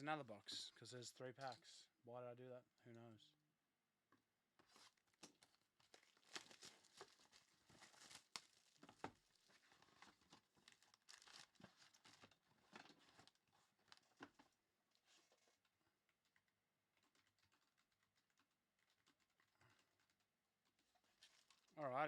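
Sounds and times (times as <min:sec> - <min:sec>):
wrappers tearing and crinkling: 0:04.6 - 0:14.3.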